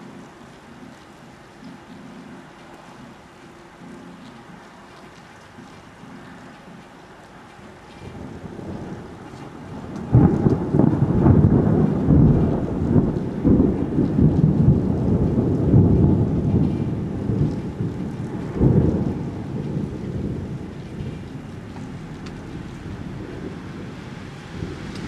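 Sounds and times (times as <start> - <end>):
thunder crack and rumble: 7.9 - 25.0.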